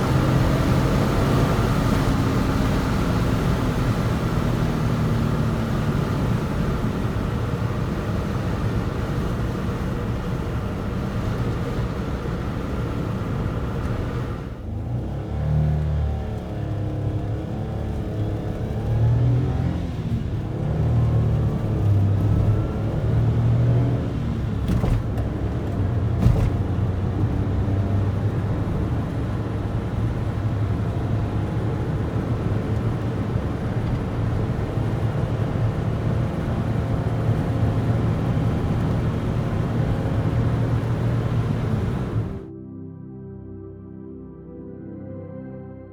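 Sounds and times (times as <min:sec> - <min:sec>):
car engine revving: 0:12.0 - 0:42.5.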